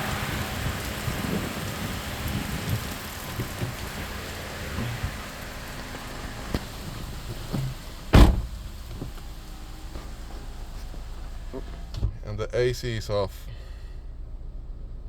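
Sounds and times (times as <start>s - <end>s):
steady rain: 0.0s - 11.9s
loud short thump: 7.6s - 8.6s.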